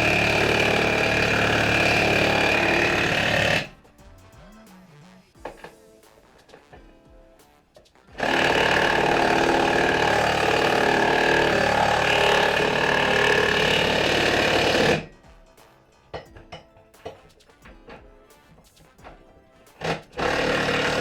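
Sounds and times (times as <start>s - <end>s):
impact driver hammering bolt: 19.8s - 21.0s.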